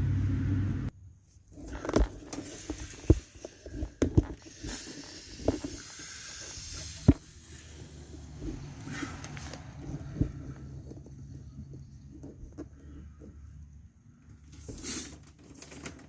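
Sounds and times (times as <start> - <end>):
short hiss: 14.7 - 15.2.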